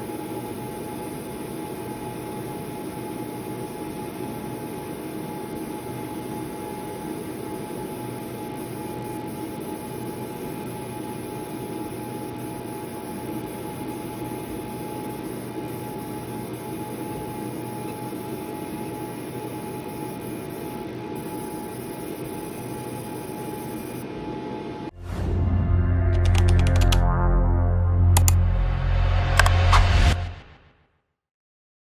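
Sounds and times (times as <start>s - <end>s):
laser marking machine whirring: 0.0s - 24.9s
loud bass-heavy sound: 24.9s - 30.7s.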